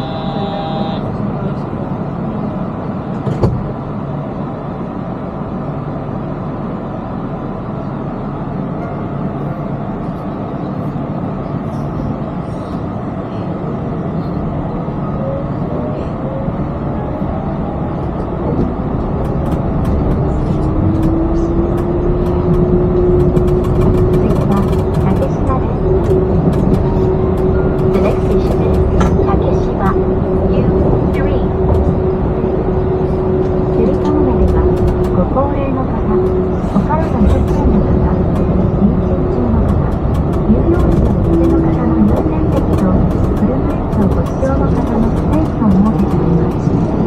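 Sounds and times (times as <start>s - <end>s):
vehicle engine rumbling: 0.0s - 47.0s.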